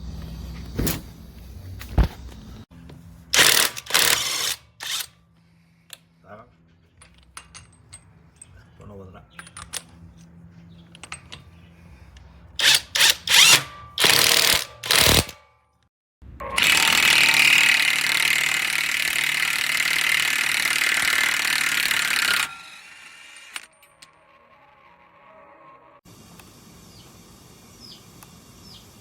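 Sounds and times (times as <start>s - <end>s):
impact wrench hammering rattle: 16.6s - 23.8s.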